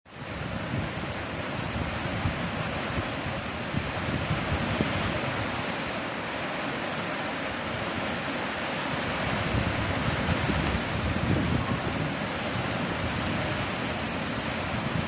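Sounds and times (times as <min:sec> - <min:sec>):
heavy rain hissing: 0:00.1 - 0:15.0
wind buffeting microphone: 0:00.2 - 0:05.7, 0:08.9 - 0:15.0.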